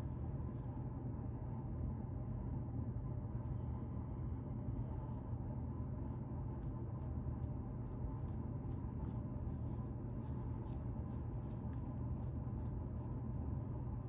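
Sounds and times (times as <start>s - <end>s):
low steady hum: 0.0s - 14.0s
beard scratching: 7.4s - 14.0s.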